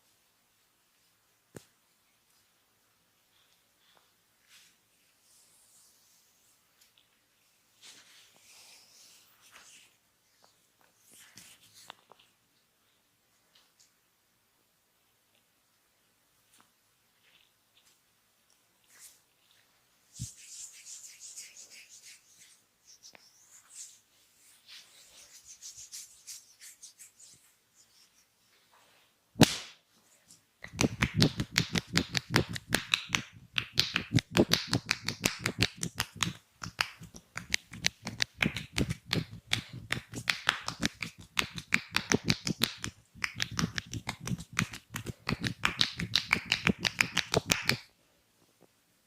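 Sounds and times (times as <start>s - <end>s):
faint room hiss: 0.0s - 49.0s
hands rubbing on skin: 18.8s - 28.3s, 30.6s - 47.9s
hands slapping skin: 29.4s - 29.8s, 30.6s - 47.9s
rapid percussive massage slaps: 29.4s - 29.8s, 30.6s - 47.9s.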